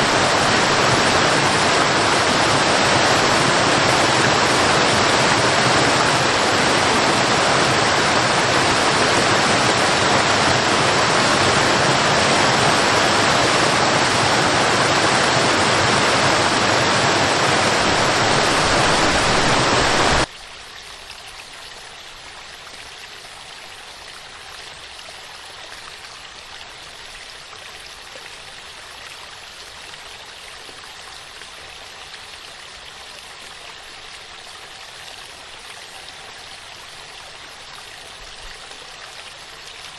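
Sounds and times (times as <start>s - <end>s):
waterfall roaring: 0.0s - 20.3s
running water: 0.0s - 39.9s.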